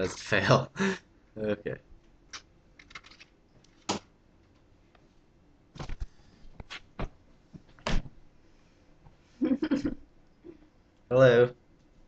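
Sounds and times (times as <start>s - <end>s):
objects being handled and set down: 5.8s - 8.2s.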